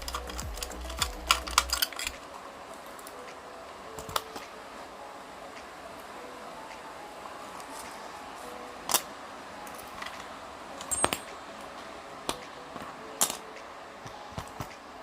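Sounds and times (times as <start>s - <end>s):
metal tools clinking: 10.8s - 11.3s.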